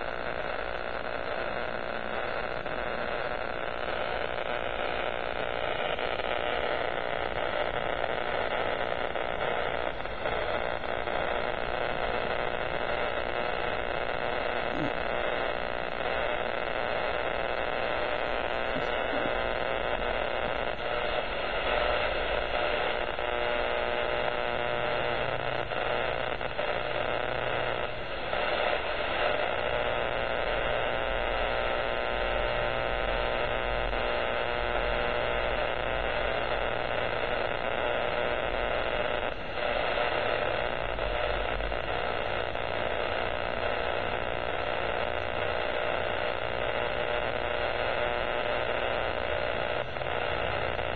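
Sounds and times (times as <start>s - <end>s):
buzzing radio static: 0.0s - 50.9s
hum: 0.0s - 50.9s.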